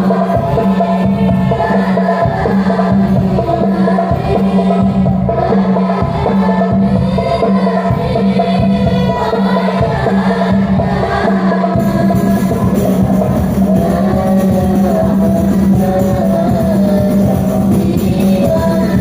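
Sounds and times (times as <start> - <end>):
devotional singing: 0.0 - 19.0.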